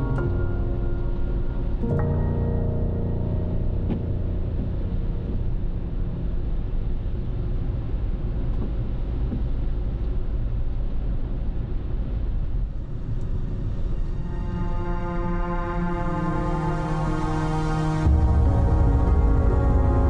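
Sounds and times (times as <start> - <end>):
car road and engine noise: 17.6 - 20.0.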